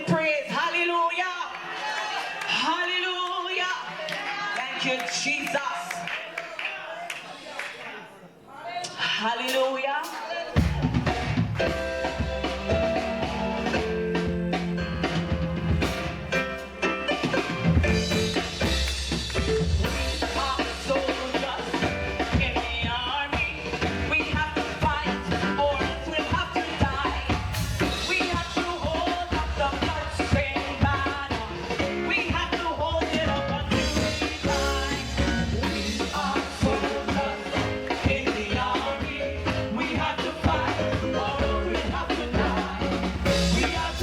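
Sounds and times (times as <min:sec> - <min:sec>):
drum kit beat: 0:09.4 - 0:44.0
gospel band playing: 0:09.4 - 0:44.0
person singing: 0:19.8 - 0:44.0.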